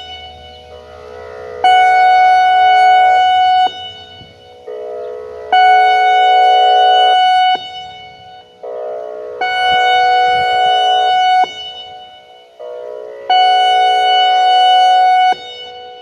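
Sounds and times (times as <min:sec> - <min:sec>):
fainter siren tone: 0:00.0 - 0:16.0
loud warning siren tone blasts: 0:00.0 - 0:16.0.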